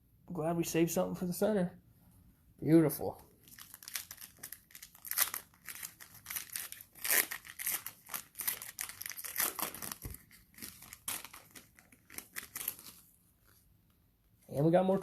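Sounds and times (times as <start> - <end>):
foil wrapper crinkling and tearing: 3.4 - 13.2.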